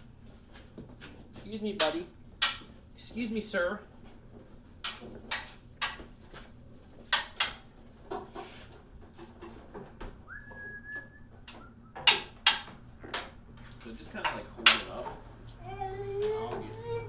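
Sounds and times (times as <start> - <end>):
high whistle-like tone: 10.3 - 12.0
sharp knocks and clicks: 11.5 - 15.2.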